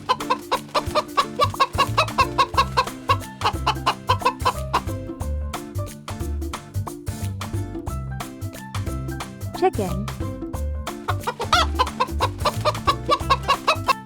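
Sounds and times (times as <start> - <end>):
chicken clucking: 0.0 - 4.8, 11.1 - 14.0
background music with steady beat: 0.0 - 14.0.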